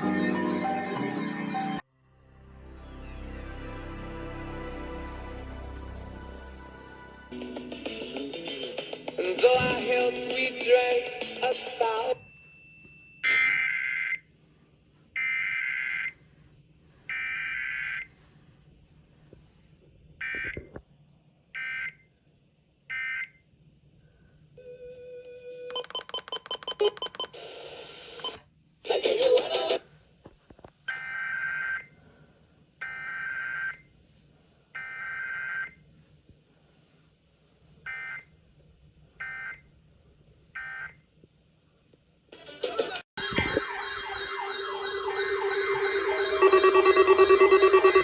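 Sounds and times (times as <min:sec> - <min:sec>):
rapid electronic beeps: 0:43.2 - 0:48.0
digital data bursts: 0:43.3 - 0:48.0.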